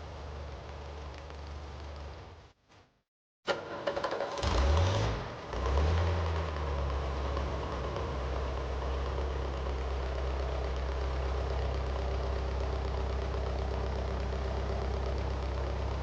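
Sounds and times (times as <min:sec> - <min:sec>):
engine idling: 0:03.5 - 0:16.0.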